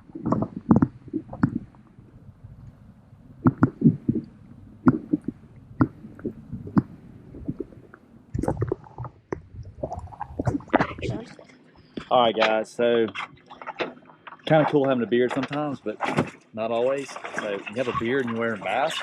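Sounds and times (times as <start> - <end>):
low rumble: 0.0 - 11.3.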